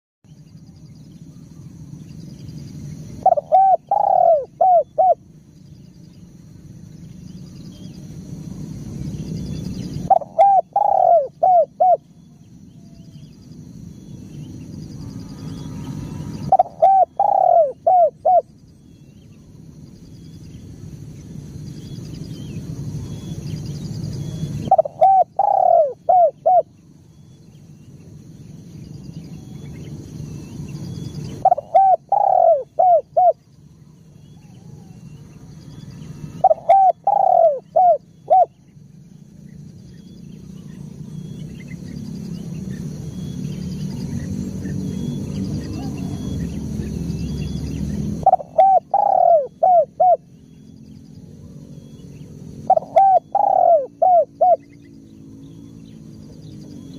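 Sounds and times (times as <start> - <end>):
low background rumble: 0.2 - 56.9
dove cooing: 3.1 - 5.3, 10.0 - 12.1, 15.2 - 18.5, 24.5 - 26.7, 31.4 - 33.4, 36.2 - 38.6, 44.6 - 47.0, 47.6 - 50.3, 52.6 - 54.8.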